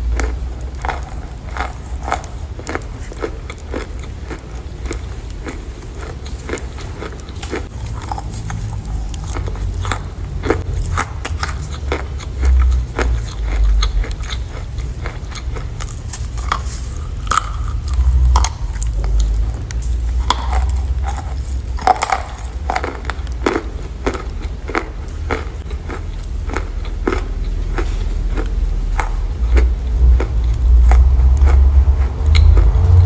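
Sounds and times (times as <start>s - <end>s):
chalk being chewed: 0.0s - 33.0s
dull low rumble: 0.0s - 33.0s.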